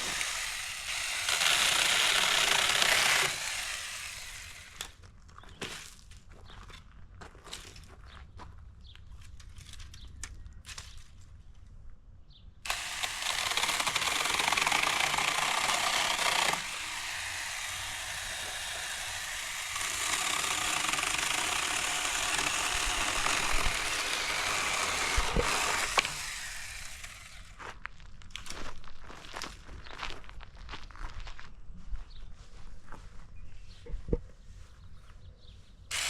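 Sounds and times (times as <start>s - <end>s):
electric chainsaw cutting branch: 0.0s - 5.0s, 12.7s - 27.6s.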